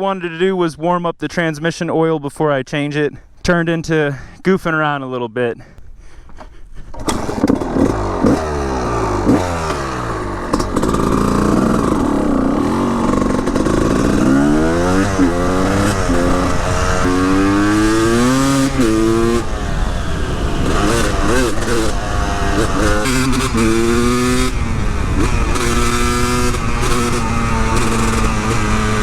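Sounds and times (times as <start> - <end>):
motorcycle engine revving: 6.9 - 29.0.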